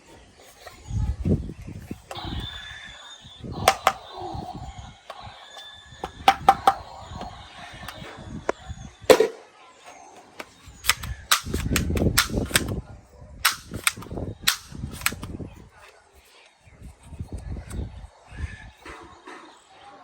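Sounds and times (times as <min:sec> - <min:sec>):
toy guns firing sharp shots: 0:03.6 - 0:04.4, 0:06.0 - 0:06.9, 0:09.1 - 0:09.5, 0:10.4 - 0:12.8, 0:13.4 - 0:15.4.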